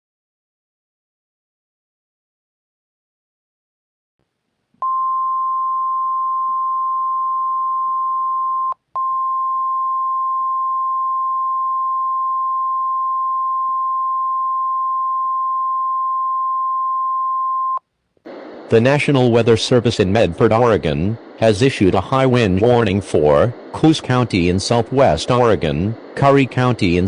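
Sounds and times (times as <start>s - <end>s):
steady alarm beep tone: 4.8s - 17.8s.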